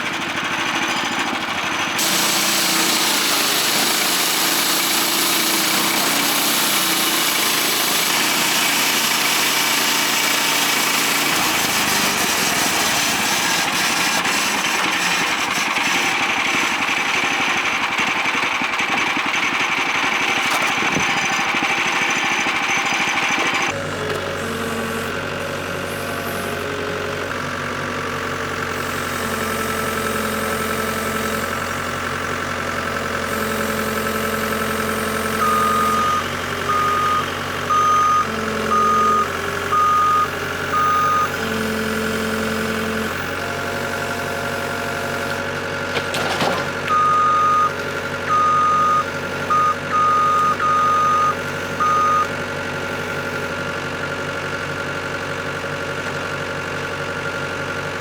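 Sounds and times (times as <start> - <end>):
engine running: 0.0 - 58.0
reversing alarm beeping: 33.5 - 41.7, 46.8 - 52.3.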